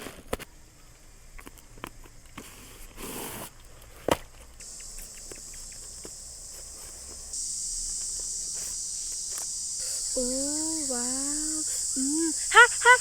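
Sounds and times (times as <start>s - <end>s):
rustle: 0.0s - 13.0s
insect trill: 4.6s - 13.0s.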